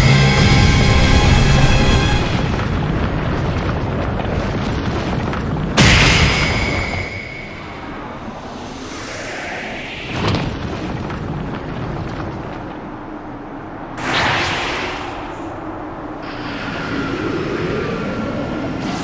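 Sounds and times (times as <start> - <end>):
steady hum rising in pitch: 0.0 - 2.5
continuous rumble: 0.0 - 6.4, 7.5 - 19.0
energy blasts: 5.8 - 11.8, 14.0 - 19.0.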